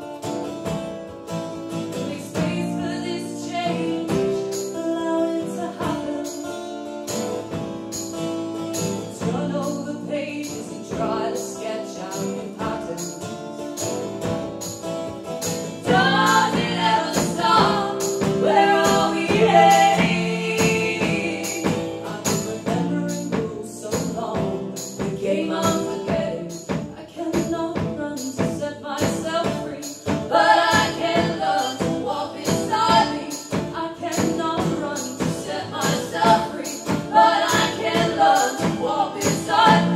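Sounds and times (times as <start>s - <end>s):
strummed guitars: 0.0s - 39.9s
jingling percussion: 5.7s - 27.5s, 29.0s - 39.9s
voices singing in harmony: 15.6s - 27.3s, 28.7s - 39.9s.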